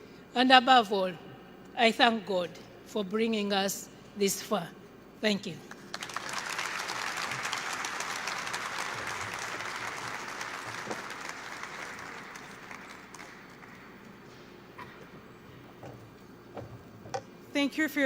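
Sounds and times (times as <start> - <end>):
audience applauding: 5.9 - 14.3.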